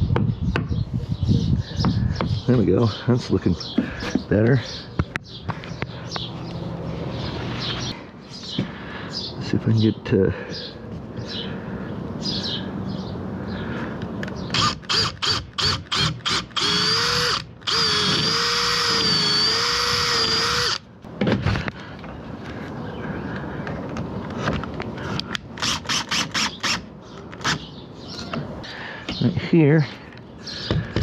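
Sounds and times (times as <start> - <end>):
power drill whining: 14.5 - 20.8.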